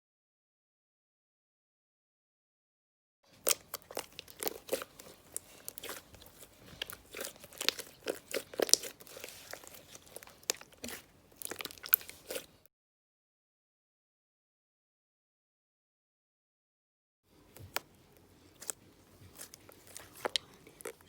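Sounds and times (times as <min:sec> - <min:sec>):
slime crunching and popping: 0:03.4 - 0:12.6, 0:18.5 - 0:21.0.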